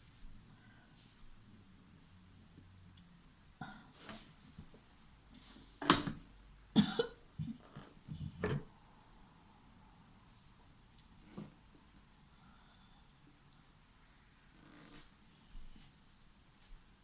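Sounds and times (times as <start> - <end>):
woman coughing: 6.8 - 7.6.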